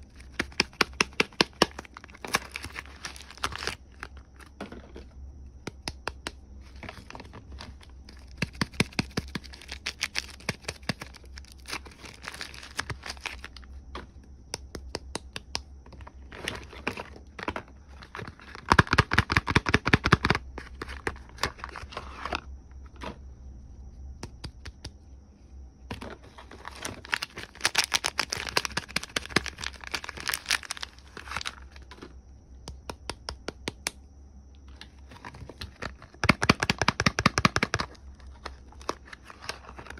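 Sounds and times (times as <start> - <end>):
packaging crinkling and tearing: 0.1 - 4.5, 6.8 - 13.7, 26.2 - 32.0, 35.1 - 39.9.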